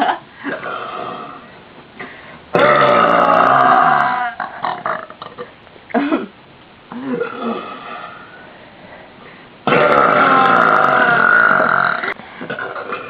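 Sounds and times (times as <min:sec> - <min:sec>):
loud burp: 0:00.0 - 0:01.4, 0:02.5 - 0:06.2, 0:06.9 - 0:08.2, 0:09.6 - 0:13.0.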